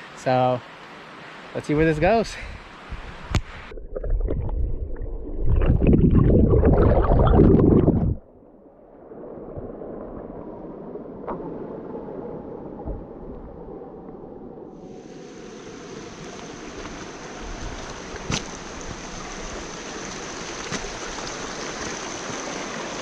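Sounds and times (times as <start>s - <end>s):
river rushing: 14.8s - 23.0s.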